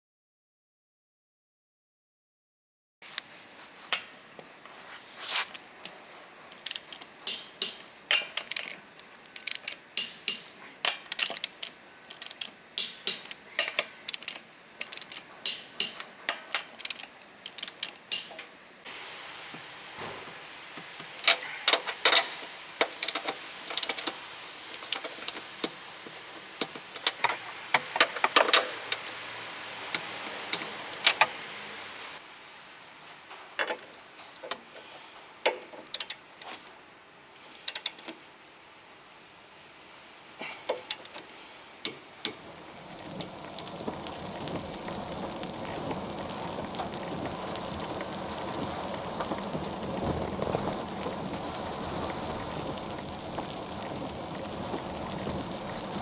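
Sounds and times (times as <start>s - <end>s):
car suspension clicking and rattling: 6.6s - 18.5s
steady driving noise: 41.8s - 56.0s.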